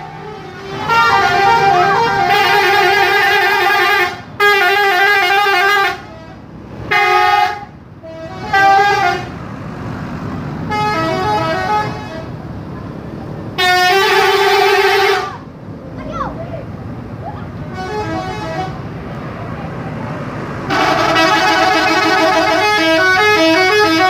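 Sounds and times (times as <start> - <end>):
multi-tone musical air horn: 0.0 - 6.2, 6.9 - 9.3, 13.6 - 15.4, 20.7 - 24.0.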